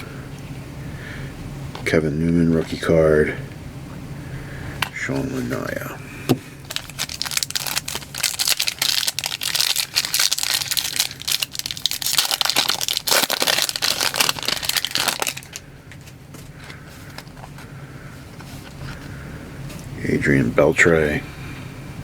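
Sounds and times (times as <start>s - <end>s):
foil wrapper crinkling and tearing: 6.6s - 17.7s.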